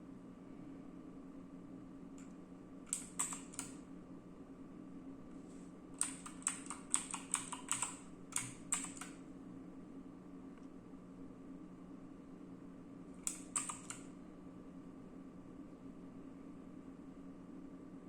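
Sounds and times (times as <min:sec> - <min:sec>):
mechanical keyboard clicks: 0:02.9 - 0:03.8, 0:06.0 - 0:09.2, 0:13.2 - 0:14.0.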